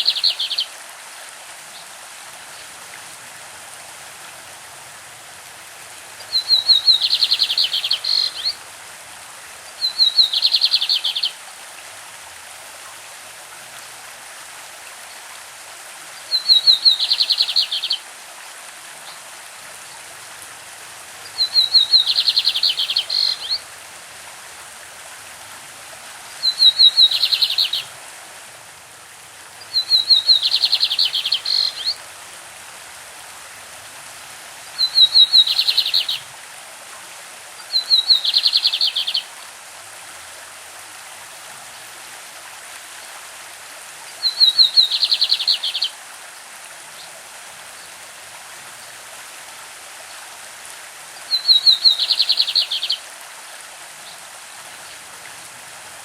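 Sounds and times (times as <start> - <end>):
stream rushing: 0.0 - 56.0
bird song with fast trill: 6.3 - 8.6, 26.4 - 27.9, 29.7 - 32.0, 51.3 - 53.0.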